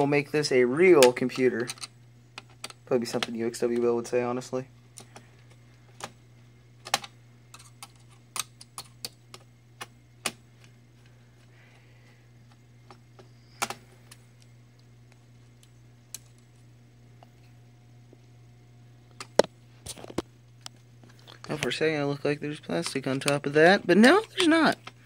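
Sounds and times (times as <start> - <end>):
faint low hum: 0.0 - 25.0.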